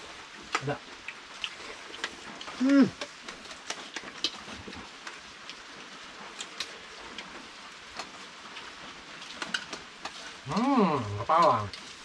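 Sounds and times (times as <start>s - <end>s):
steady rain: 0.0s - 12.0s.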